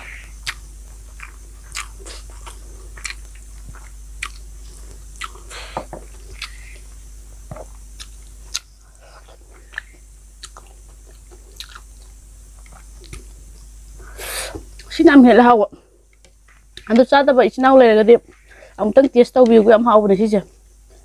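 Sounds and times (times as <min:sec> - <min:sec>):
person chewing crunchy food: 0:00.1 - 0:13.7.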